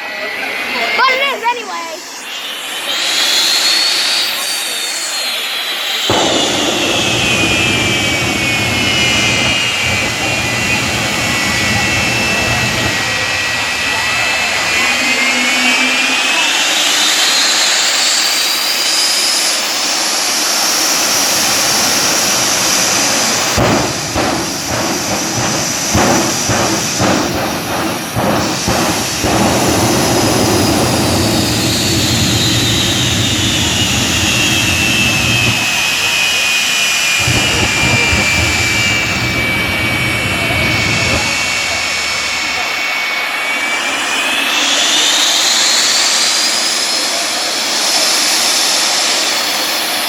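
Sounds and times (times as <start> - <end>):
turbine engine whine: 0.0 - 50.0
sharp pops: 6.1 - 15.0, 21.6 - 42.6.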